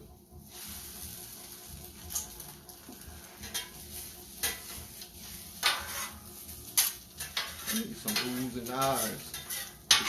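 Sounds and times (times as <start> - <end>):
food sizzling on grill: 0.4 - 10.0
metal spatula scraping: 3.2 - 10.0.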